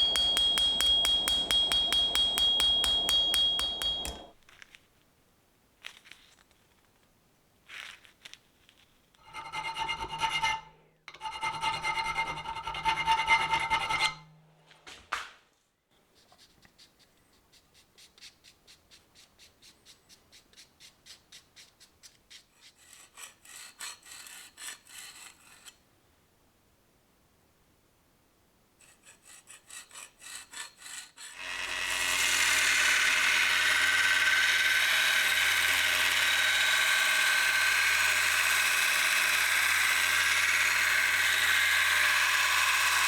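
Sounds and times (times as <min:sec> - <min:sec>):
hand file stroking steel: 0:00.0 - 0:04.3, 0:09.2 - 0:14.3, 0:16.2 - 0:25.8, 0:28.8 - 0:43.0
small power tool whining: 0:31.4 - 0:43.0.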